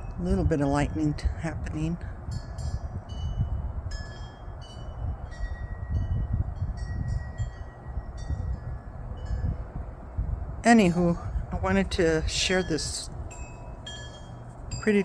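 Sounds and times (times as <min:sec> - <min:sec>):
wind rumble on microphone: 0:00.0 - 0:15.0
wind chimes tinkling: 0:02.3 - 0:09.9, 0:12.0 - 0:15.0.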